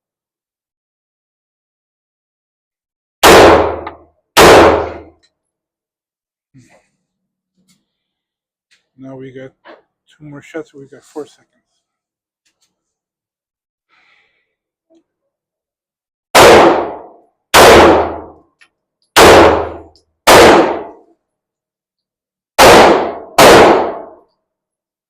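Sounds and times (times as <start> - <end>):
pistol shots: 3.2 - 5.1, 16.3 - 18.4, 19.2 - 21.0, 22.6 - 24.2.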